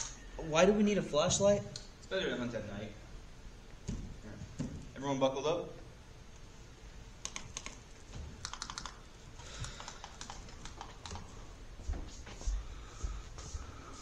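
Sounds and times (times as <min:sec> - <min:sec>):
light clicking like typing: 0:07.2 - 0:11.3.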